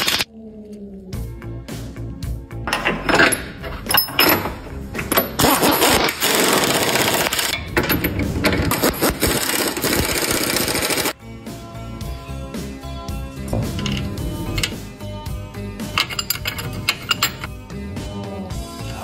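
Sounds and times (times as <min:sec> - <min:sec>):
power tool running: 0:09.2 - 0:11.1.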